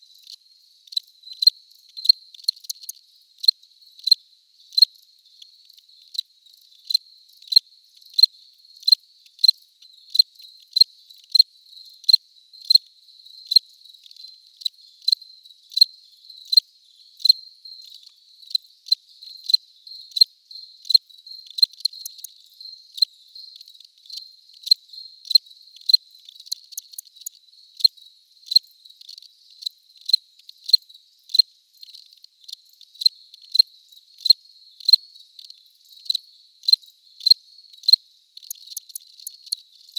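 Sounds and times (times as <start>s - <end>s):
cricket chirping: 0.0s - 39.9s.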